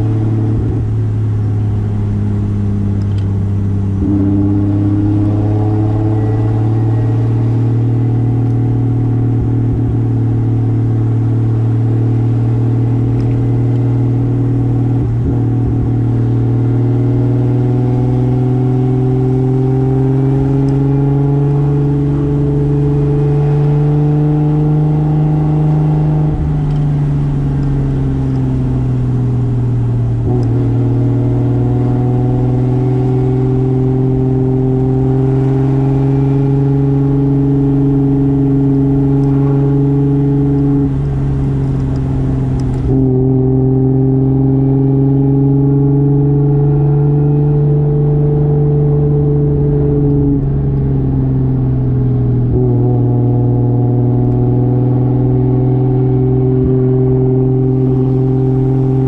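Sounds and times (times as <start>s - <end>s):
car engine running: 0.0s - 59.0s.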